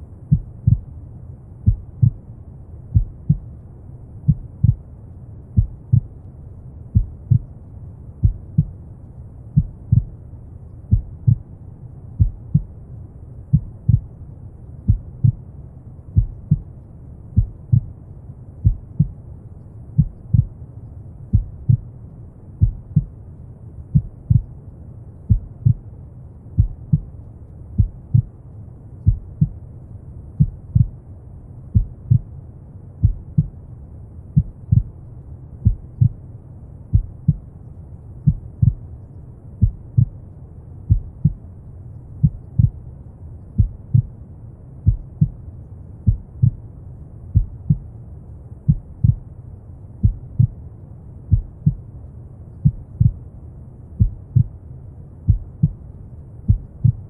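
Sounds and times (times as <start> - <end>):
slow heartbeat: 0.2 - 1.0, 1.6 - 2.3, 2.9 - 3.6, 4.3 - 4.9, 5.6 - 6.2, 6.9 - 7.6, 8.2 - 8.8, 9.5 - 10.2, 10.8 - 11.5, 12.2 - 12.8, 13.4 - 14.2, 14.8 - 15.5, 16.1 - 16.7, 17.3 - 18.0, 18.6 - 19.2, 20.0 - 20.6, 21.2 - 21.9, 22.6 - 23.2, 23.9 - 24.6, 25.2 - 25.9, 26.6 - 27.1, 27.8 - 28.4, 29.0 - 29.6, 30.4 - 31.0, 31.7 - 32.3, 33.0 - 33.6, 34.3 - 35.0, 35.6 - 36.2, 36.9 - 37.5, 38.2 - 38.9, 39.6 - 40.2, 40.8 - 41.4, 42.2 - 42.8, 43.5 - 44.2, 44.8 - 45.4, 46.0 - 46.6, 47.3 - 47.9, 48.6 - 49.3, 50.0 - 50.6, 51.3 - 51.9, 52.6 - 53.3, 54.0 - 54.6, 55.3 - 55.8, 56.4 - 57.0.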